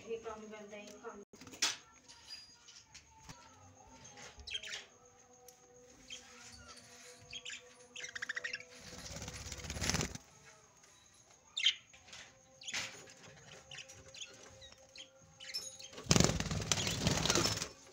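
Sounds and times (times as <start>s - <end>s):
wing flapping: 8.8s - 10.2s, 16.0s - 17.8s.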